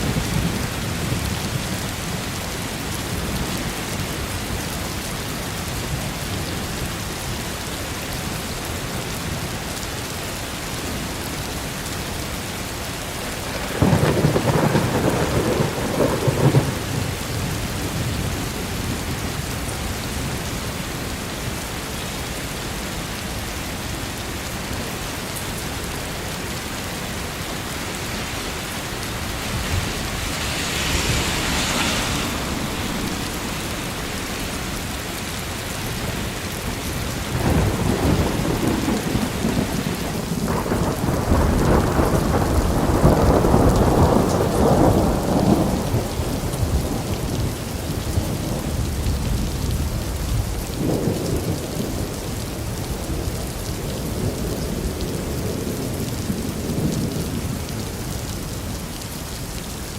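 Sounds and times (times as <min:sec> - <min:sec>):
thunder rumbling: 0:00.0 - 0:04.3, 0:13.3 - 0:19.9, 0:27.0 - 0:57.8
steady rain: 0:00.0 - 0:59.9.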